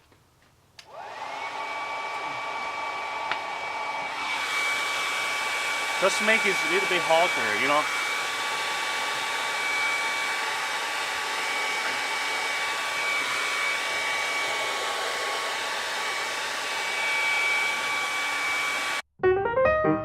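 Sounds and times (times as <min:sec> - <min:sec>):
hair dryer blowing: 0:00.8 - 0:19.0
piano music: 0:19.2 - 0:20.0.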